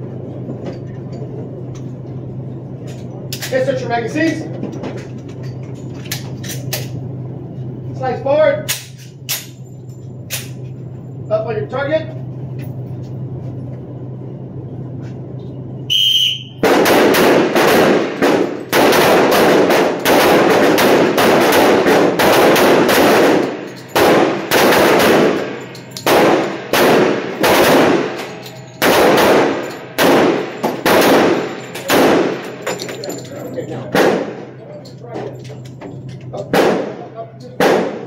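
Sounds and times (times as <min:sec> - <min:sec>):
whistle blast: 0:15.9 - 0:16.6
handguns firing: 0:16.6 - 0:33.2, 0:33.9 - 0:34.5, 0:36.5 - 0:37.0, 0:37.6 - 0:38.0.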